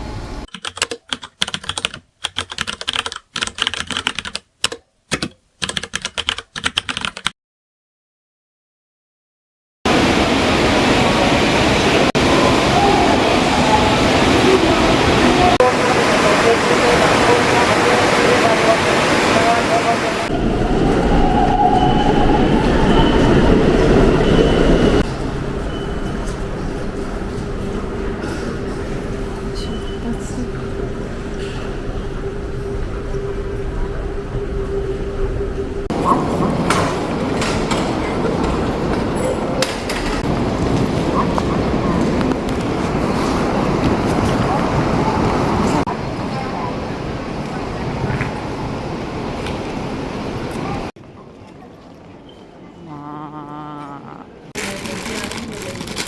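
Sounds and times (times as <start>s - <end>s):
typing on computer keyboard: 0.5s - 7.3s
train rumbling: 9.9s - 50.9s
faint high squeal: 20.4s - 27.2s.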